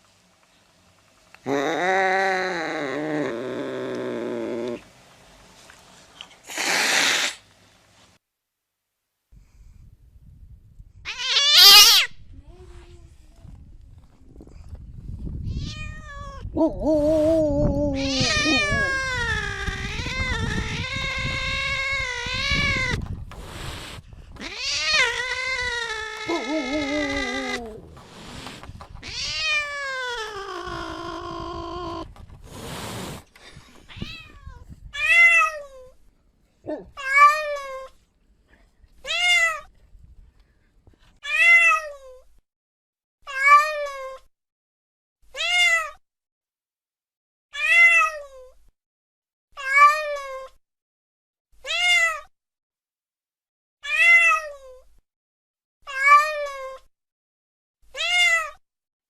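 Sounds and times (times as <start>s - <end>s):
cat meowing: 11.1s - 12.6s, 15.4s - 16.5s, 17.6s - 32.2s, 33.8s - 36.0s, 36.7s - 37.9s, 39.0s - 39.7s, 41.2s - 42.2s, 43.3s - 44.2s, 45.3s - 46.0s, 47.6s - 48.5s, 49.6s - 50.5s, 51.6s - 52.3s, 53.8s - 54.8s, 55.9s - 56.8s, 57.9s - 58.6s.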